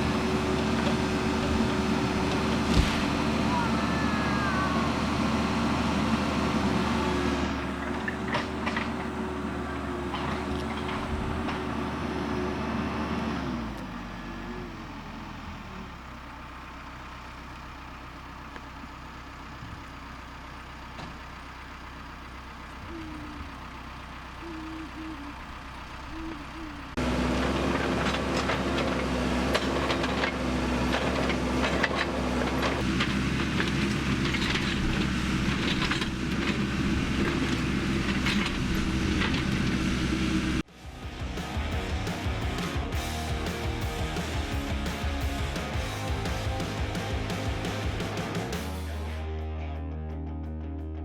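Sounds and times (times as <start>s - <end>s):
backhoe engine running: 0.0s - 49.3s.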